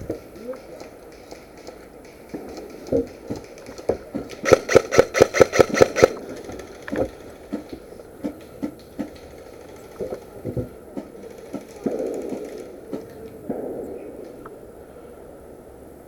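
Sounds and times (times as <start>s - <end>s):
airsoft gun shots: 4.4s - 6.2s.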